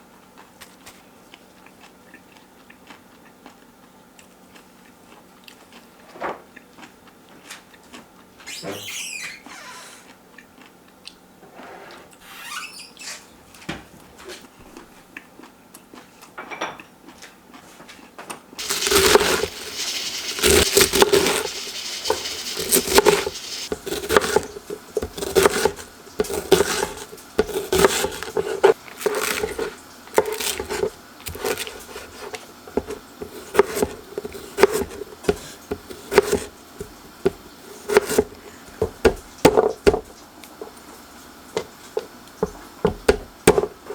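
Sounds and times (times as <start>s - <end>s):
kitchen knocks clatter and scrapes: 18.6s - 40.8s.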